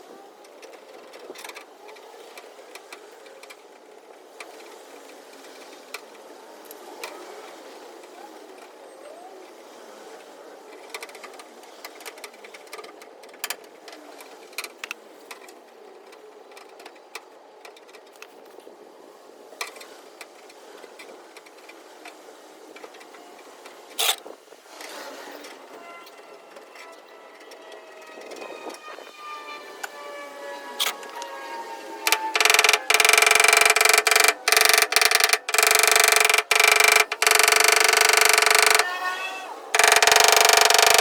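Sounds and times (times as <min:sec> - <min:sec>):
tools tapping on metal: 0:39.8 - 0:41.0.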